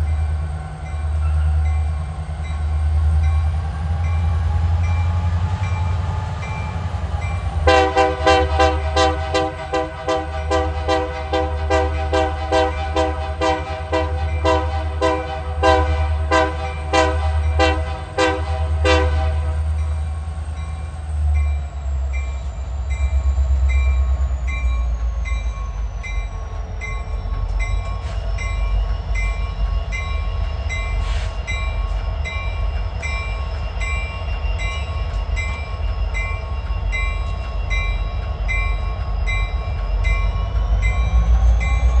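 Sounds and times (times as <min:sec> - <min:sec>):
train rumbling past: 0:00.0 - 0:42.0
locomotive air horn: 0:07.6 - 0:19.7.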